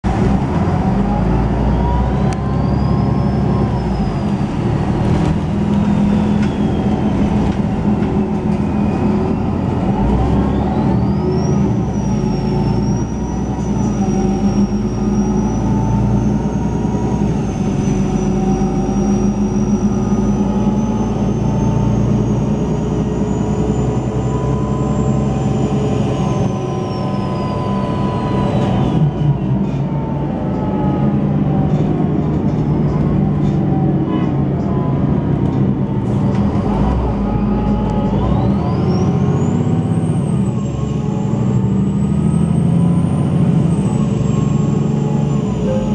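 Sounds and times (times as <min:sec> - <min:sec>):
bus diesel engine accelerating: 0:00.0 - 0:45.9.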